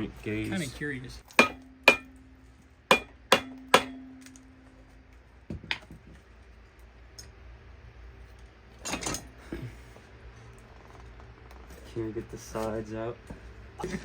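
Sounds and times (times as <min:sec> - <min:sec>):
metal-on-metal strikes: 0:01.3 - 0:04.8.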